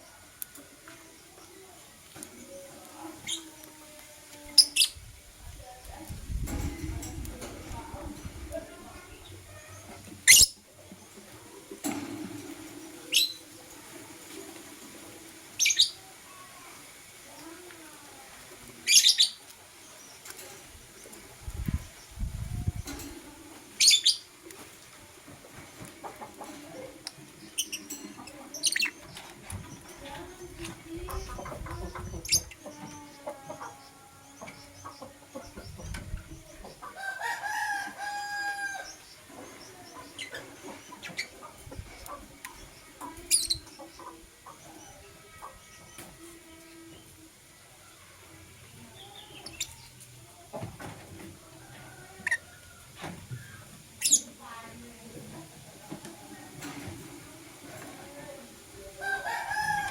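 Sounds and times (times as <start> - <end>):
lovebirds chirping: 7.8 - 11.2, 15.6 - 16.5, 18.6 - 24.4, 25.6 - 46.0, 51.6 - 54.7
rooster crowing: 37.0 - 38.9, 59.0 - 59.9.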